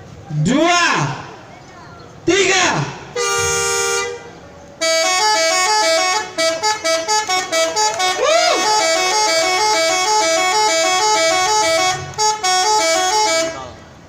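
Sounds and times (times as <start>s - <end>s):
multi-tone bus air horn melody: 3.2s - 14.0s.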